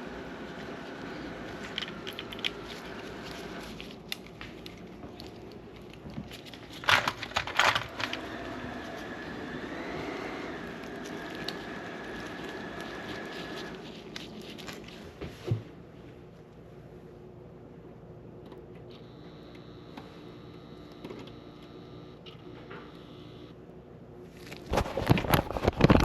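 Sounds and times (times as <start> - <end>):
electrical hum with high whine: 0.0 - 26.0.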